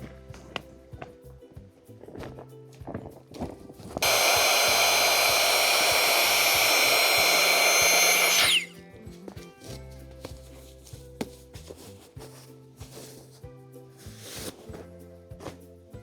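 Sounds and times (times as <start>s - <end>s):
background music: 0.0s - 16.0s
high-speed motor whining: 4.0s - 8.7s.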